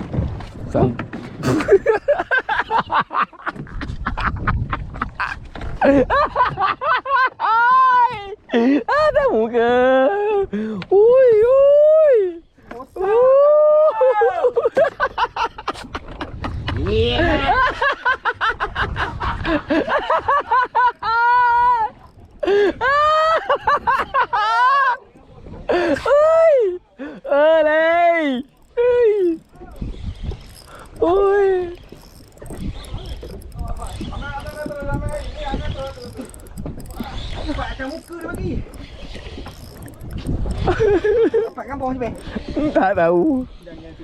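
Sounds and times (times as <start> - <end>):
laughter: 1.4 - 7.6, 8.5 - 10.4, 14.0 - 25.0, 40.6 - 41.6
men chattering: 21.3 - 44.0.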